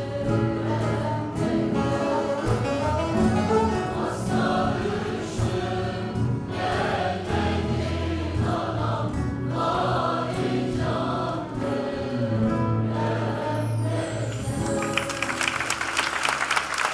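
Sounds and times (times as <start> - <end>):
choir singing in unison: 0.0 - 14.9
audience applause: 14.3 - 16.9.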